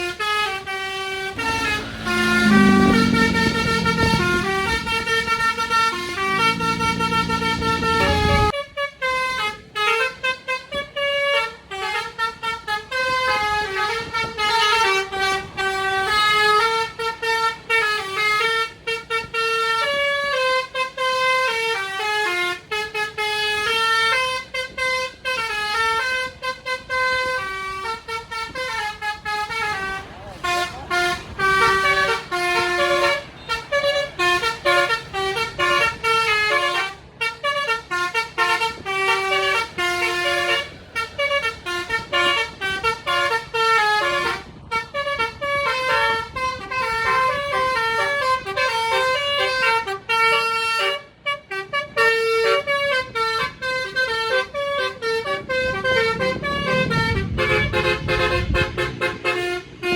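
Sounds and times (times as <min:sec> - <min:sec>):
musical bus horn tune: 0:00.0 - 0:59.9.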